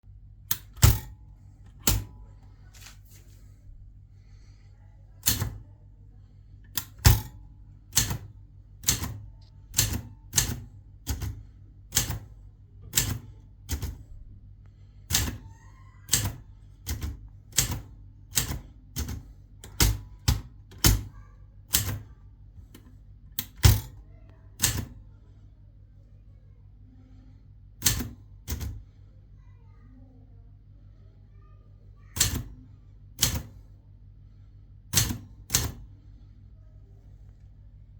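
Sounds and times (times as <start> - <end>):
faint low hum: 0.0 - 37.9
typewriter keys clacking: 8.0 - 9.2, 16.1 - 21.1.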